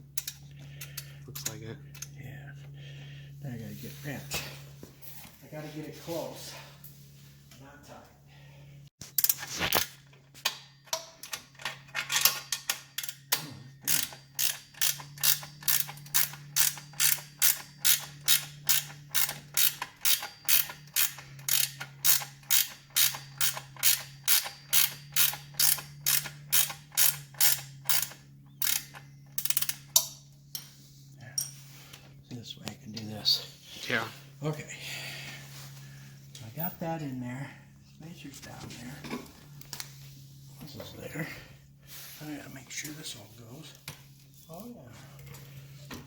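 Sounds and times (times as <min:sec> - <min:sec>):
ratchet wrench clicking: 0:00.1 - 0:02.1, 0:10.4 - 0:30.7.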